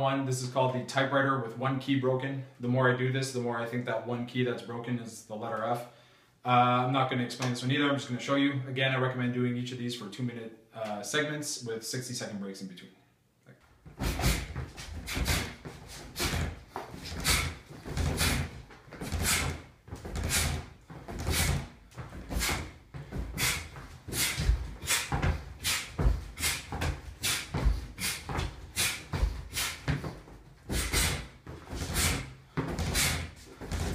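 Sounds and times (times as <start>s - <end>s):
feet stepping on floor: 13.8s - 33.9s
quick swishes of movement: 14.0s - 19.6s, 20.2s - 33.9s.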